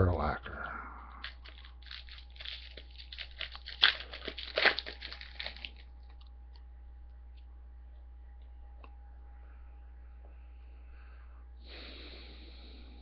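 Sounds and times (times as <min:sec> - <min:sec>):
wrapper tearing and crinkling: 0:01.0 - 0:06.3.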